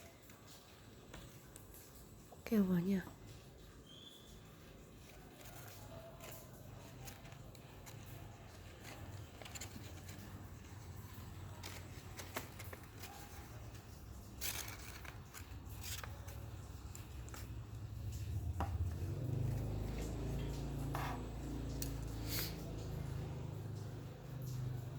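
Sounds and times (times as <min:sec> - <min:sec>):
paper rustling and crinkling: 0:04.9 - 0:20.3.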